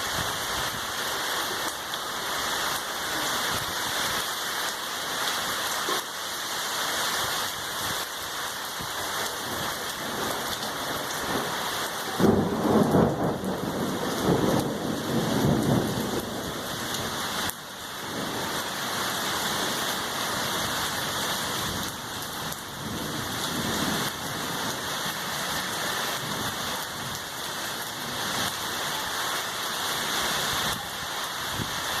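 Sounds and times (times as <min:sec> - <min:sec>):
heavy rain falling: 0:00.0 - 0:32.0
thunder rumbling: 0:09.5 - 0:18.8.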